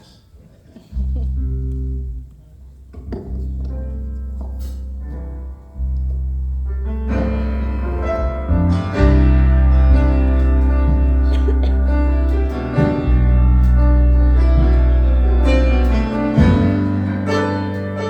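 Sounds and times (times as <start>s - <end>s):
heavy bass: 1.0s - 18.0s
keyboard and string notes: 6.8s - 18.0s.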